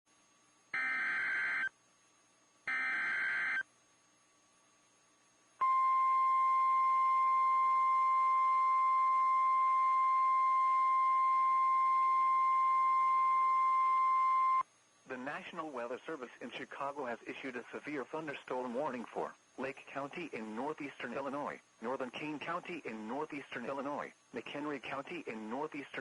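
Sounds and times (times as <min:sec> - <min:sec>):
buzzy digital data tones: 0:00.8 - 0:01.7, 0:02.7 - 0:03.6
steady warning alarm tone: 0:00.8 - 0:01.7, 0:02.7 - 0:03.6, 0:05.6 - 0:14.6.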